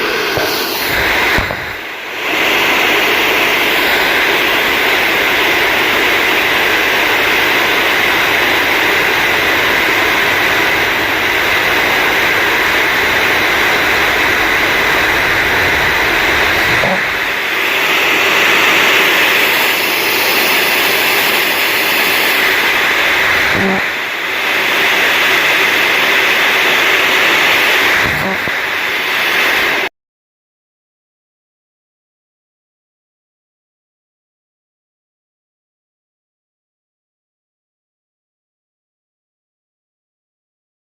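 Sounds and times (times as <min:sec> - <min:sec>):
hair dryer running: 0:00.0 - 0:29.9.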